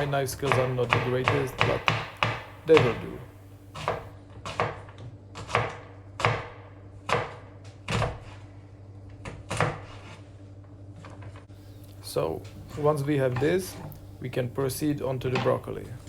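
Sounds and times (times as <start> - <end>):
low steady hum: 0.0 - 5.4, 6.0 - 16.0
knife chopping on cutting board: 0.0 - 8.4, 9.2 - 10.2.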